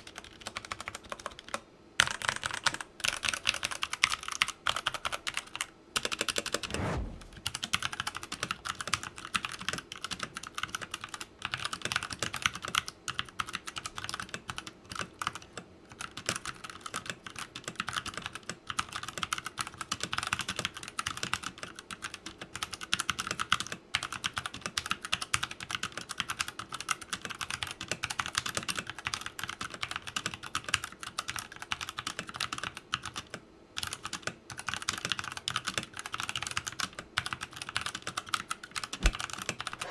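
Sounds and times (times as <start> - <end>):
mechanical keyboard typing: 0.0 - 6.1, 8.6 - 39.9.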